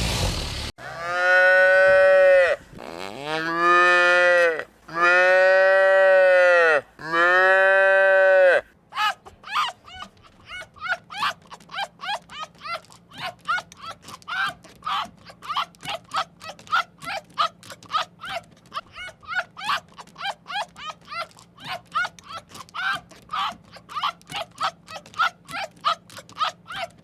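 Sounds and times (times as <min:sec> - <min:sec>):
short high-pitched yelps: 0:09.0 - 0:27.0.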